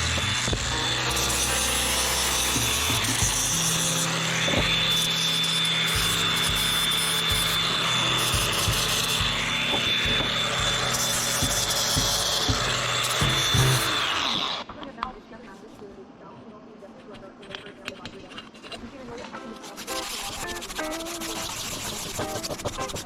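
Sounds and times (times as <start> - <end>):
background music with low bass: 0.0 - 13.9
power tool rasping: 0.0 - 14.7, 17.5 - 23.0.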